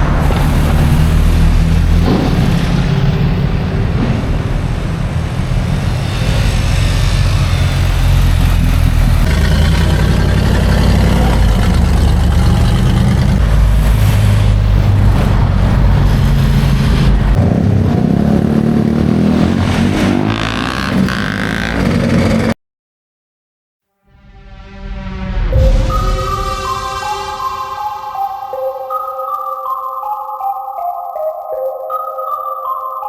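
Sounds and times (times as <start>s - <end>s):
road traffic engines rumbling: 0.0s - 22.6s.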